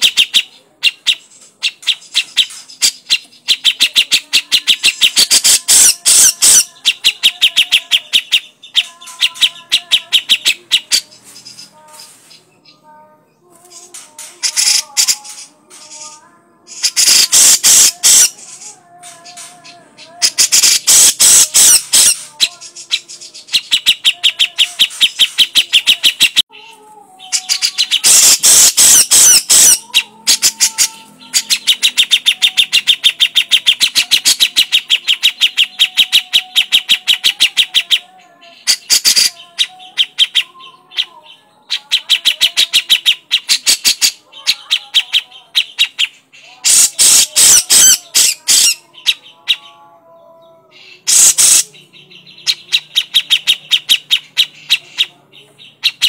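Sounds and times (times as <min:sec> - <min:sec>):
bird harsh chattering call: 0:00.0 - 0:12.2, 0:13.8 - 0:16.1, 0:16.7 - 0:26.4, 0:27.2 - 0:38.0, 0:38.6 - 0:40.5, 0:41.8 - 0:49.6, 0:51.0 - 0:56.0.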